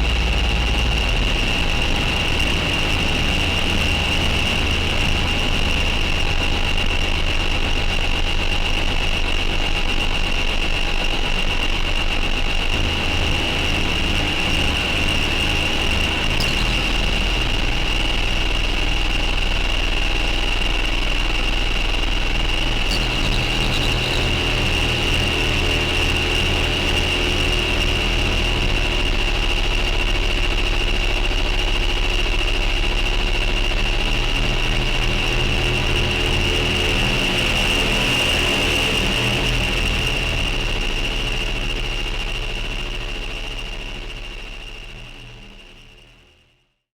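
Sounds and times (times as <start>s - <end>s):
synthesizer drone: 0.0s - 6.1s, 14.8s - 29.4s.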